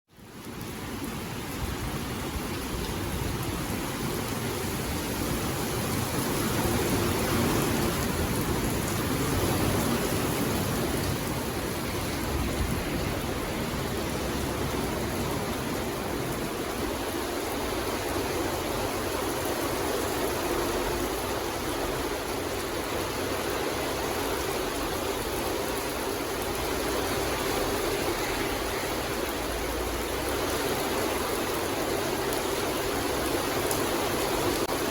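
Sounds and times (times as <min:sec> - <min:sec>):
steady rain falling: 0:00.1 - 0:34.9.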